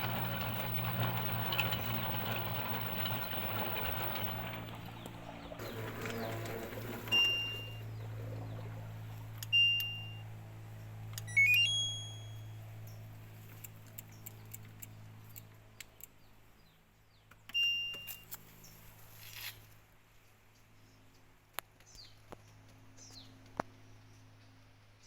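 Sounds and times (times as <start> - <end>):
pump motor humming: 0.0 - 9.4
washing machine beeps: 5.7 - 7.9, 9.5 - 10.2, 11.3 - 12.5, 17.6 - 18.1
rising jingle of short tones: 11.3 - 12.6.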